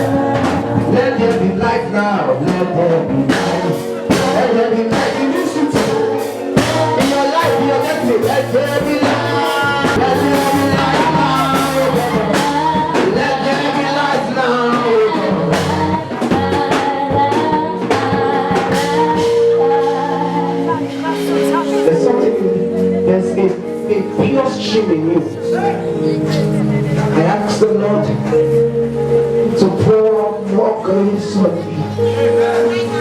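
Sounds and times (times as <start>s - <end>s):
band with drums: 0.0s - 24.5s
gospel singing: 0.0s - 33.0s.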